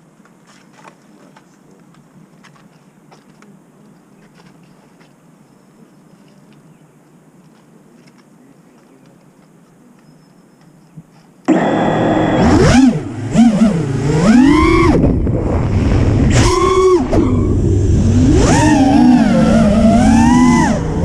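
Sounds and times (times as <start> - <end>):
quadcopter motors whining: 11.5 - 21.0.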